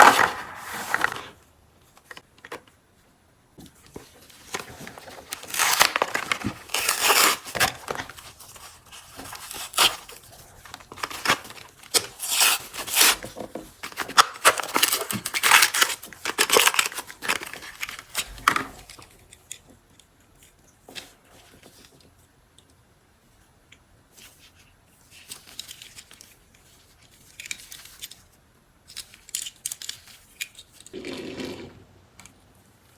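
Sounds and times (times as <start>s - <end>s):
packaging rustling: 0.0s - 1.4s, 4.4s - 18.6s
packaging tearing and crinkling: 0.0s - 1.4s, 5.2s - 18.6s.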